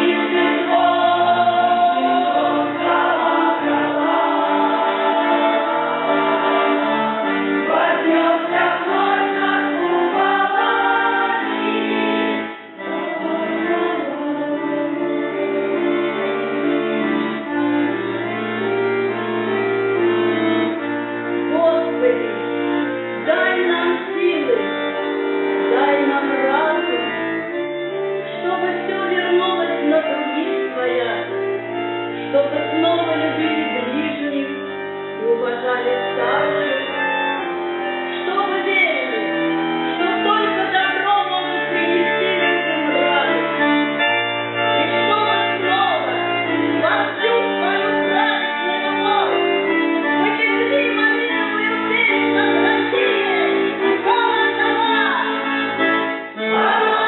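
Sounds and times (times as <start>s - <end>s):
folk choir singing in parts: 0.0s - 15.2s, 55.7s - 57.0s
held instrumental chords: 0.0s - 57.0s.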